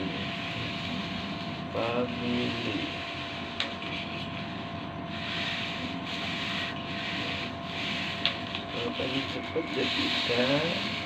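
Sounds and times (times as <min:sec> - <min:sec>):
faint steady whine: 0:00.0 - 0:11.0
styrofoam rubbing hiss: 0:04.5 - 0:11.0.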